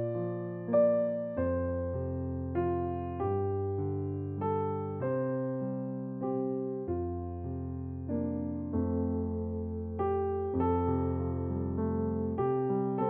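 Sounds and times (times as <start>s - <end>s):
electric piano slow chords: 0.0s - 13.0s.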